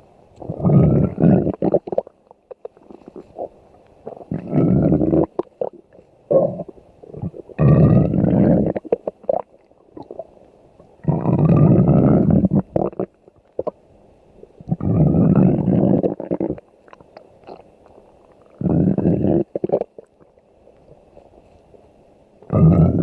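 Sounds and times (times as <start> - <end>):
cartoon stomach growl: 0.4 - 3.5, 4.1 - 10.2, 11.0 - 13.7, 14.6 - 16.6, 18.4 - 20.1, 22.5 - 23.0.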